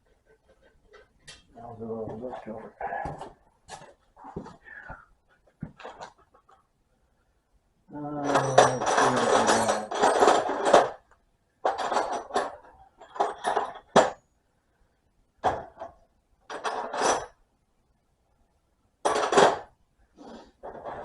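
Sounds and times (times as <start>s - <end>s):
metal tools clinking: 8.2s - 11.0s.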